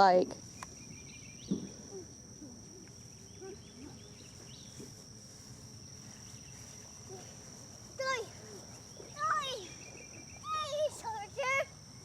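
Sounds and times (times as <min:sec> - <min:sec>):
high-pitched insect drone: 0:00.0 - 0:12.0
short thump: 0:01.4 - 0:01.8.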